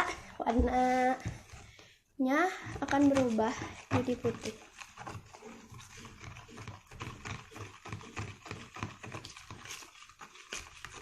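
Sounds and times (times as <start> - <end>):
plastic spoon scraping bowl: 0.0 - 11.0.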